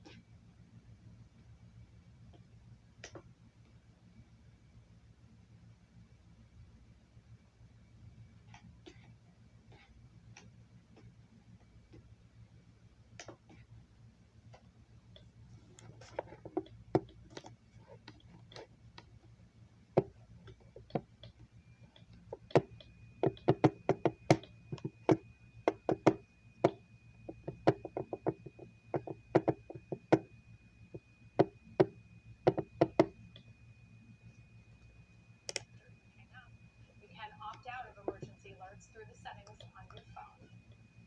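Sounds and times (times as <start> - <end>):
steady low hum: 0.0 - 41.0
faint high steady tone: 18.8 - 41.0
sharp clicks and taps: 20.0 - 30.3, 35.5 - 35.7.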